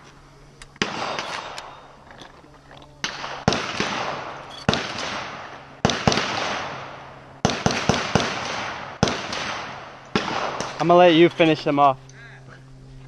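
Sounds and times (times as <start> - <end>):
shotgun shots with rolling echo: 0.8 - 2.0, 3.0 - 11.2.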